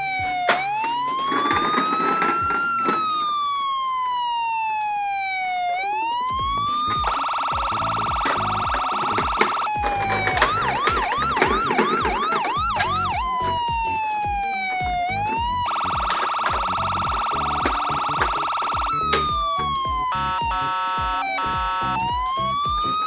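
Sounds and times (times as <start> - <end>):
toy electronic siren: 0.0 - 23.0.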